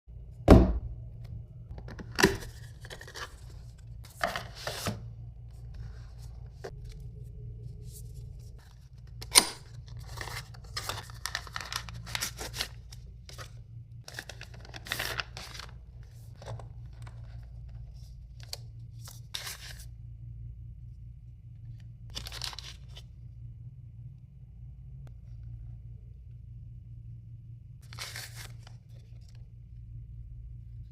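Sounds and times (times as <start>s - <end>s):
steady low hum: 0.1s - 30.9s
packaging tearing and rustling: 9.2s - 15.8s, 22.1s - 23.0s, 27.8s - 28.8s.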